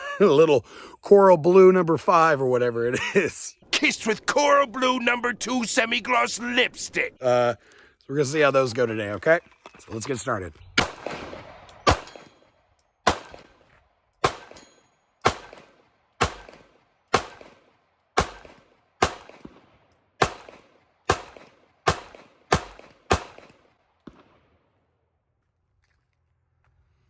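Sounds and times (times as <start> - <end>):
pistol shots: 10.8 - 24.5.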